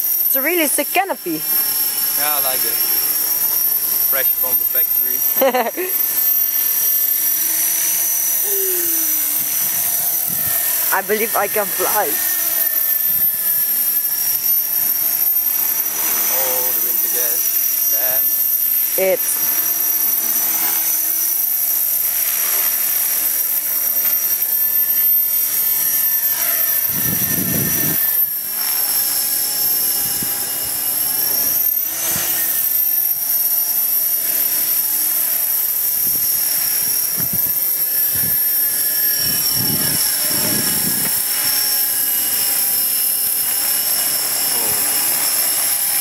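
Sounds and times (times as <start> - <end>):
rc helicopter motor whine: 0.0 - 46.0
wind buffeting microphone: 9.4 - 10.7, 26.9 - 28.0, 37.1 - 38.5, 39.2 - 41.5.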